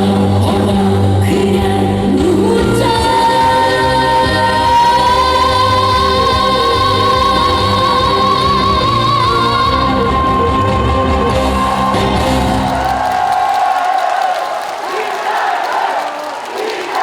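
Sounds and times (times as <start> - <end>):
woman singing a long high note: 0.0 - 11.8
live band backing track: 0.0 - 13.1.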